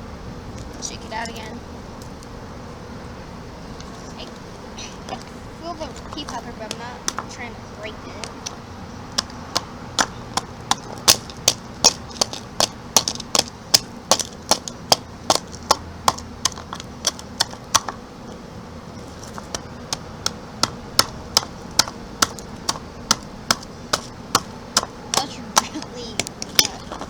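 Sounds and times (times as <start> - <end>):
tool chipping ice: 9.2 - 18.0, 19.2 - 27.0.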